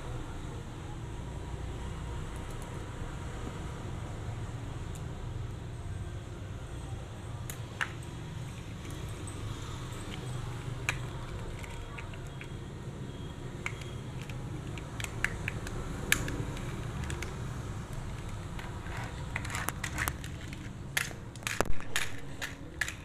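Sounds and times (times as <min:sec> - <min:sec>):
plastic toy parts clicking: 0:10.1 - 0:12.6, 0:13.6 - 0:23.0.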